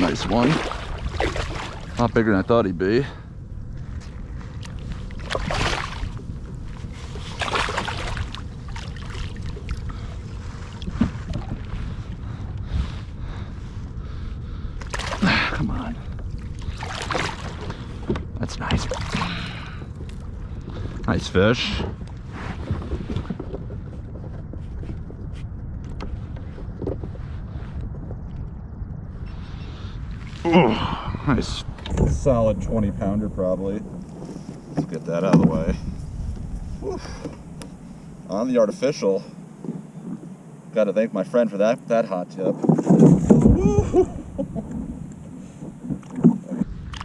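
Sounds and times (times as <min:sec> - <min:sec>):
water splashing: 0:00.0 - 0:02.5, 0:04.5 - 0:11.8, 0:14.8 - 0:15.7, 0:16.3 - 0:18.0, 0:18.6 - 0:19.8
wind rumble on microphone: 0:00.0 - 0:47.0.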